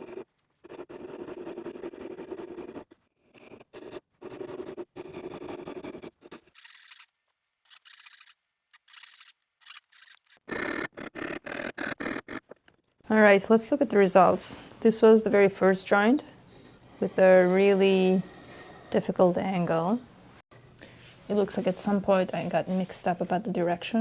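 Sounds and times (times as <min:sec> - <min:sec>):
high-pitched scratches: 0:06.6 - 0:07.1, 0:07.7 - 0:10.4.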